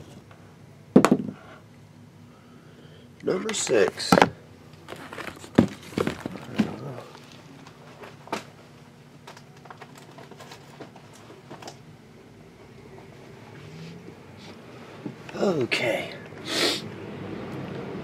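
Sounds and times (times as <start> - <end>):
taps and knocks on a table: 1.0 - 1.4
card packs crinkling: 4.7 - 8.5, 9.2 - 11.8.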